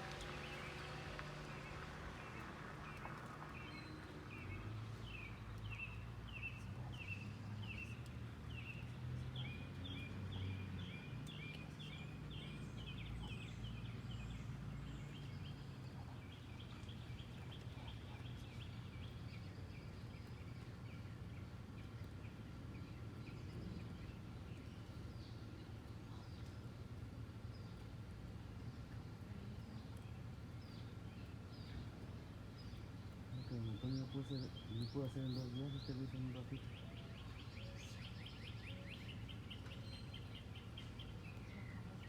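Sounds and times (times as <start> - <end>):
bird chirping: 32.6 - 42.0.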